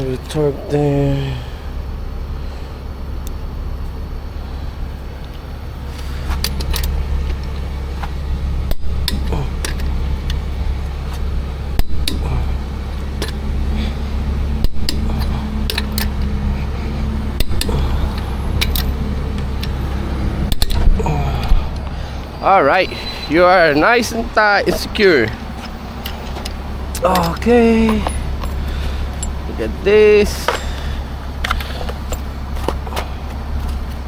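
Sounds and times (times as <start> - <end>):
steady low hum: 0.0 - 34.0
torque wrench clicking: 11.8 - 12.5, 14.6 - 16.4, 17.4 - 19.8.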